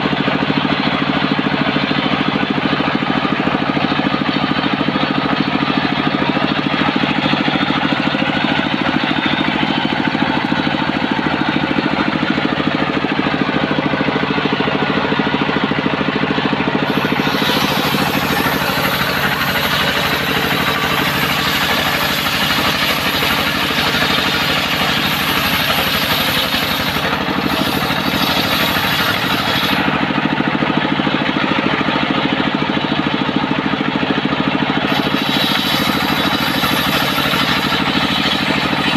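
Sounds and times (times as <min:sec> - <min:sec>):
saw blade cutting wood: 0:00.0 - 0:31.5, 0:34.7 - 0:38.9
engine running: 0:00.0 - 0:38.9.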